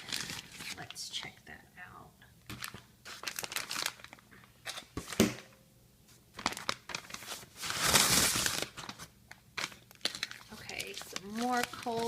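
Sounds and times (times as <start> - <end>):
plastic rustling: 0.0 - 1.1, 2.5 - 5.3, 6.3 - 12.0.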